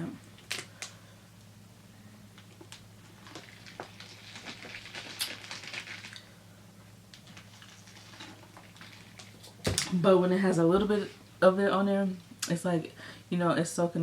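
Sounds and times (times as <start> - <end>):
low steady hum: 0.0 - 14.0
chewing and mouth sounds: 2.7 - 6.3.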